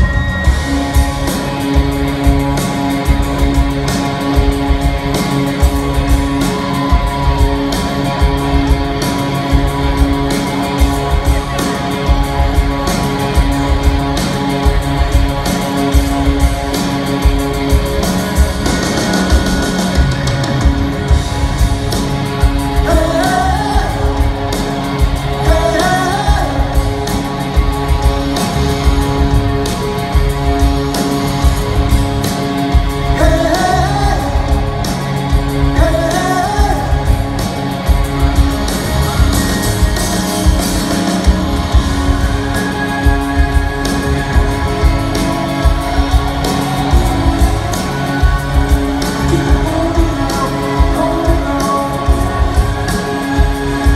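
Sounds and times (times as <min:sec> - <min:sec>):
drums beating: 0:00.0 - 0:53.9
live rock band playing: 0:00.0 - 0:53.9
person singing: 0:22.7 - 0:27.6, 0:33.0 - 0:37.6, 0:42.4 - 0:53.9.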